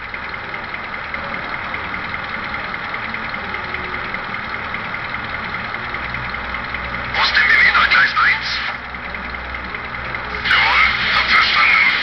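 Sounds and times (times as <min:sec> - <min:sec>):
diesel locomotive engine idling: 0:00.0 - 0:12.0.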